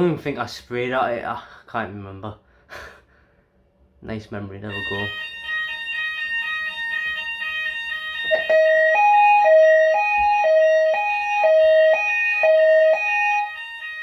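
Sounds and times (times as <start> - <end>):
pulsing multi-tone fire alarm: 4.7 - 14.0
two-note high-low alarm tone: 4.7 - 14.0.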